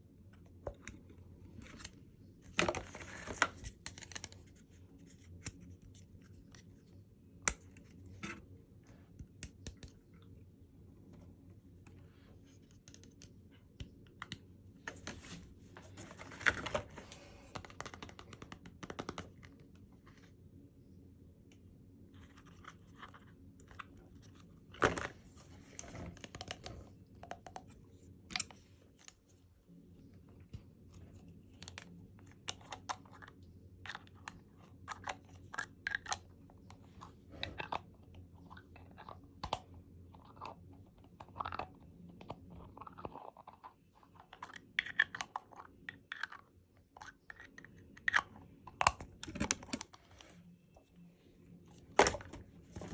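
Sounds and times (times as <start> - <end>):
packaging clicks and taps: 16.0 - 19.6.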